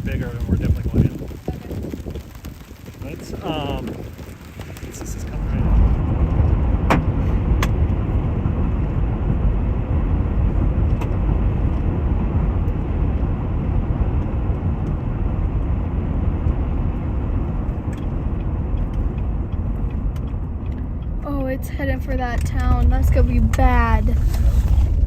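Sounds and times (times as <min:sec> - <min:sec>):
hailstones clicking on car body: 0:00.0 - 0:08.0, 0:16.4 - 0:25.0
storm wind rumble: 0:00.0 - 0:25.0.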